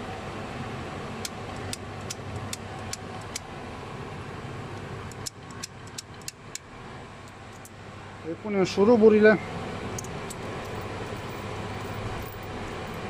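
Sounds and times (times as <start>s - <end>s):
steady low hum: 0.0s - 13.0s
light clicks of metal parts: 4.7s - 7.8s, 10.0s - 13.0s.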